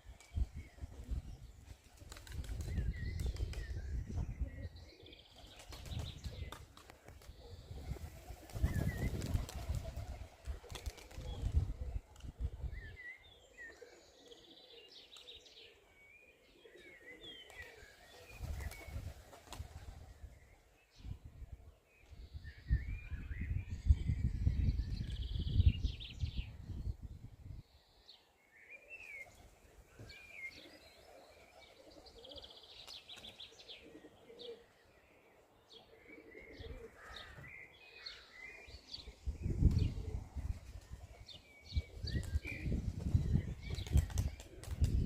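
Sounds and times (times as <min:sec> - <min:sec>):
wind buffeting microphone: 0:00.2 - 0:04.9, 0:07.5 - 0:13.0, 0:22.2 - 0:27.6, 0:38.9 - 0:45.0
birds chirping: 0:27.6 - 0:45.0.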